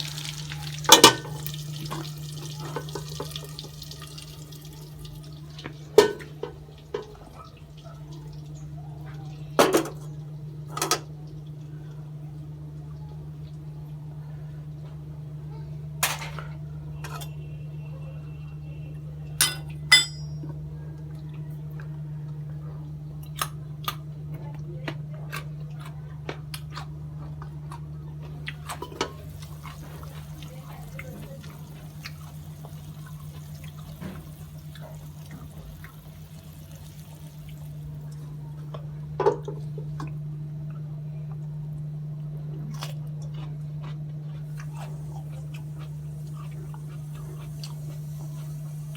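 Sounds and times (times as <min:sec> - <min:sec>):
utensils and dishes clinking: 0:00.1 - 0:03.6, 0:19.4 - 0:20.6.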